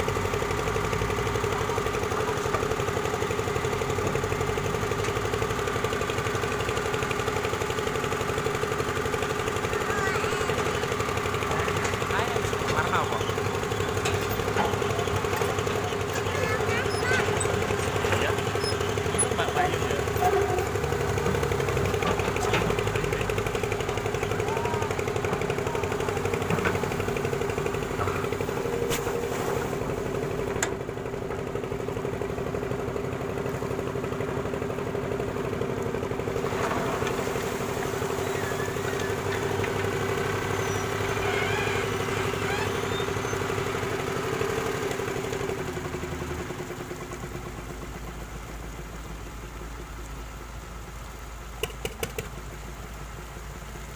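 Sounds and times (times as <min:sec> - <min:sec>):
excavator engine running: 0:00.0 - 0:53.9.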